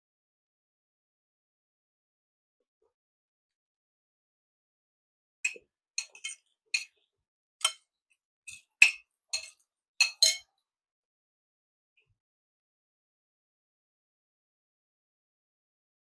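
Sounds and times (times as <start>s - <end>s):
cutlery clinking on dishes: 5.5s - 7.0s, 8.5s - 10.5s.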